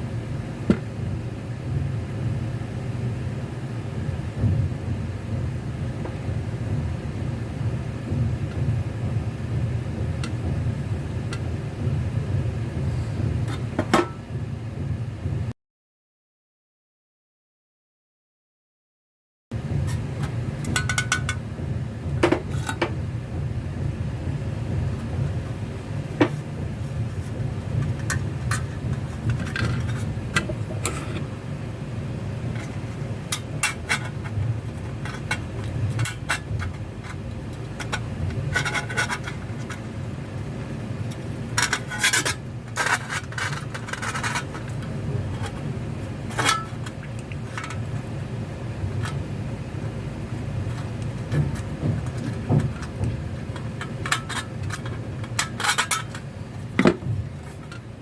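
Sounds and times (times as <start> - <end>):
steady low hum: 0.0 - 15.6, 19.5 - 58.0
metal parts scraping: 41.6 - 45.6
small metal parts clicking and tapping: 50.7 - 56.9.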